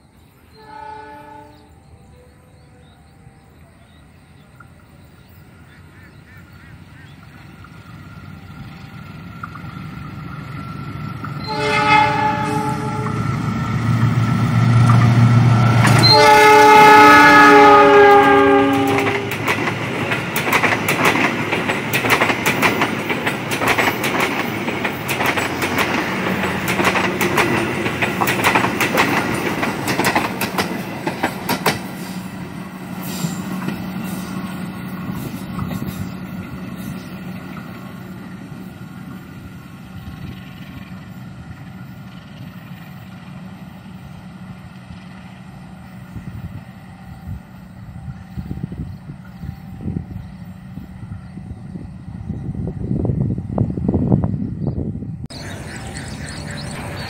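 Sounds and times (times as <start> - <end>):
diesel locomotive engine rumble: 0.0 - 57.0
train horn: 0.5 - 3.6, 11.4 - 13.7, 15.2 - 19.5
train wheels clattering on rails: 13.0 - 16.6, 17.6 - 39.3.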